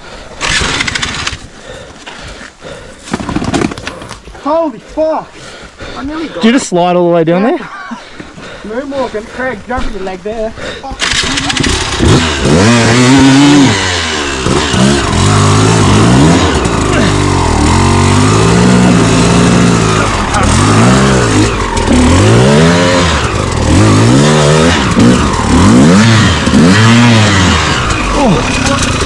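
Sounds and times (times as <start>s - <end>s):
dirt bike engine revving: 0.4s - 1.4s, 11.0s - 29.0s.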